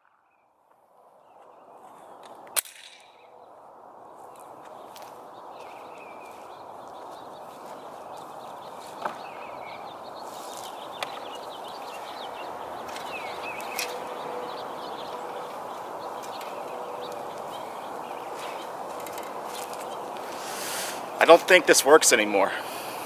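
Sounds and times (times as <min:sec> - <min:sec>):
small birds chirping: 0:01.2 - 0:23.0.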